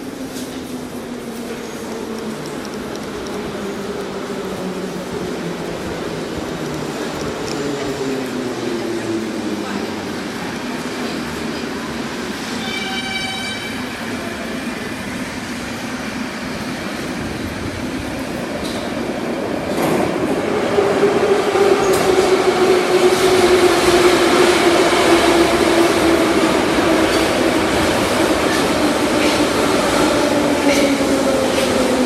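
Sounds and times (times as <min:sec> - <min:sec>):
metro train rolling rumble: 0:00.0 - 0:32.0.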